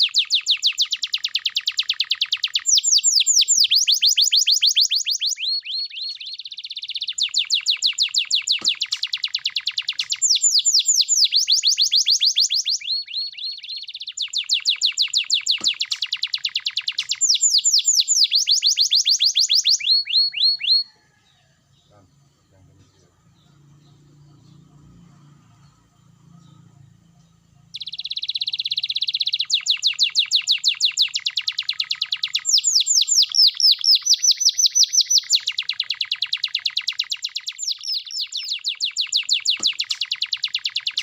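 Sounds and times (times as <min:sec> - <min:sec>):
canary singing trills: 0:00.0 - 0:41.0.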